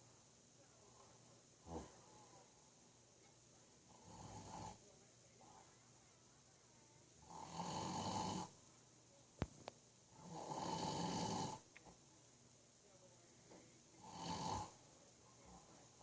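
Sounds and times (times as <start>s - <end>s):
man snoring: 3.9s - 4.8s, 7.3s - 8.5s, 10.2s - 11.6s, 14.0s - 14.8s.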